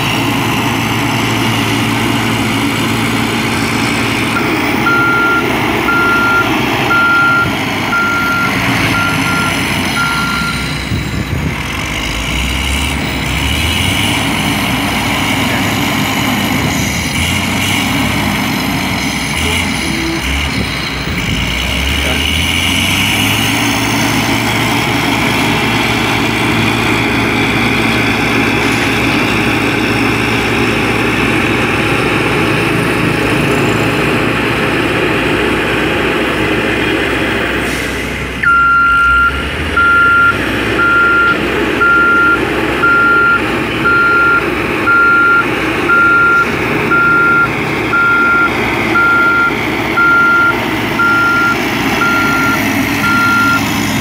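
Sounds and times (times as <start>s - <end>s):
diesel engine running: 0.0s - 54.0s
reversing alarm beeping: 4.3s - 11.2s, 38.4s - 53.7s.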